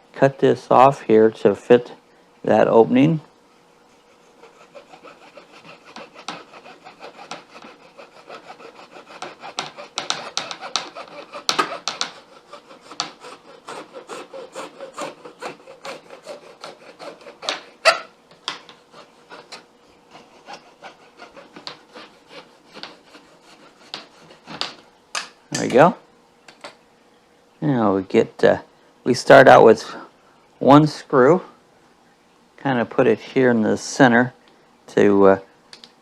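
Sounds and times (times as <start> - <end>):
hand saw cutting wood: 4.1 - 24.8.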